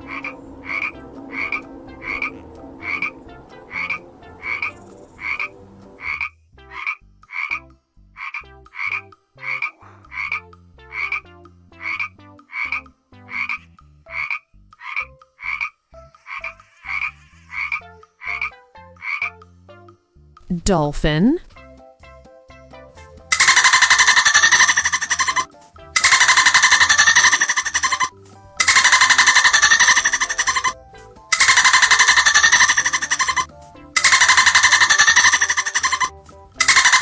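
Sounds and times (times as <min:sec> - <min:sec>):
steady low hum: 0:00.0 - 0:06.1
frog croaking: 0:00.0 - 0:19.5, 0:23.0 - 0:37.0.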